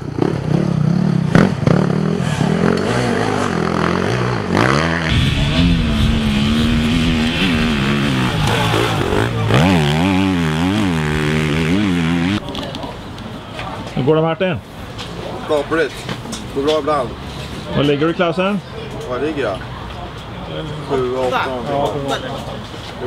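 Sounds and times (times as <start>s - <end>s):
motorcycle engine revving: 0.0s - 12.4s.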